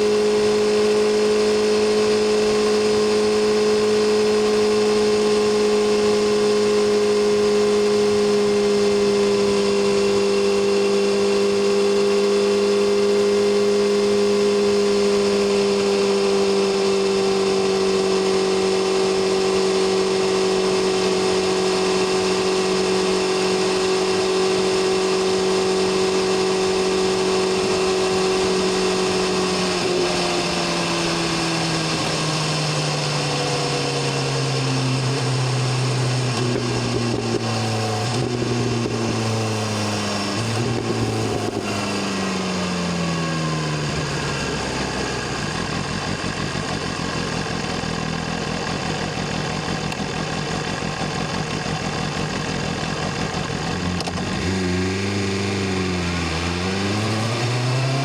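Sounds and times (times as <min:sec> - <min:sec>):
motorcycle engine and exhaust: 0:00.0 - 0:58.0.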